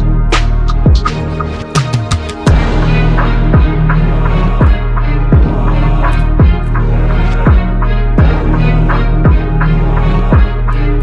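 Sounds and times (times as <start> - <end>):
electronic music: 0.0 - 11.0.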